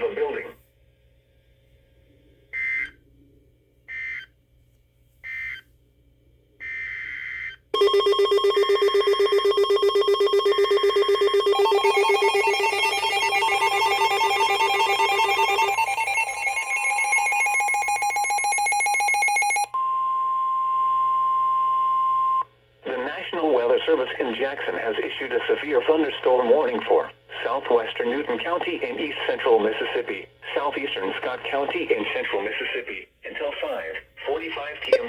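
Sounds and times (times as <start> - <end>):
pulsing electronic alarm: 6.6 - 19.8.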